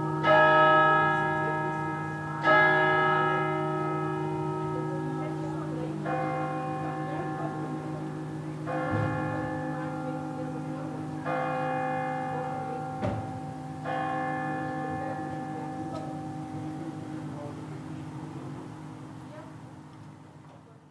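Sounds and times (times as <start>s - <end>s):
church bell tolling: 0.0s - 19.9s.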